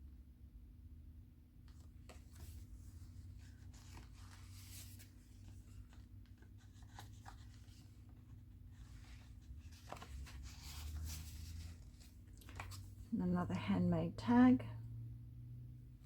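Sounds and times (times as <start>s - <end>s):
paper pages rustling: 1.7s - 13.1s.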